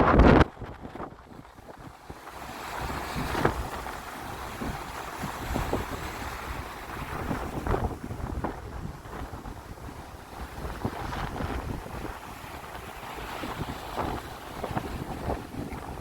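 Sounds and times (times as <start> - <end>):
sea waves splashing: 0.0 - 16.0
wind buffeting microphone: 0.0 - 16.0.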